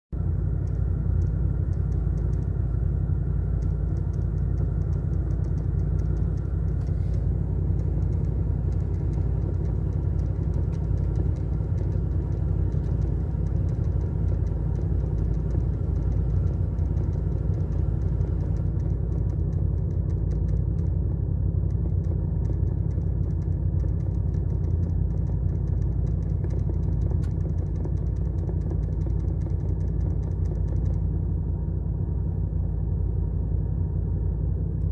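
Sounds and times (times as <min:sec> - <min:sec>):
road and engine rumble: 0:00.0 - 0:34.9
ventilation clicking rattle: 0:03.4 - 0:21.0, 0:21.6 - 0:31.1.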